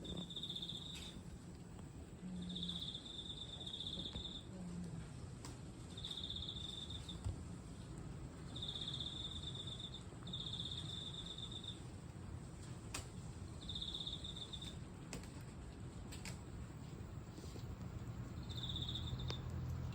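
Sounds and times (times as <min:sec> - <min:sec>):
cricket chirping: 0:00.0 - 0:01.2, 0:02.3 - 0:04.4, 0:05.9 - 0:07.2, 0:08.4 - 0:11.9, 0:13.6 - 0:14.8, 0:18.2 - 0:19.9.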